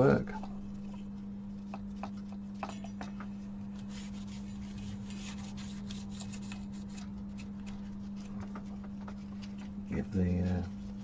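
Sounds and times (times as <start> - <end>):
steady low hum: 0.0 - 11.0
rubbing on remote control: 1.0 - 9.7.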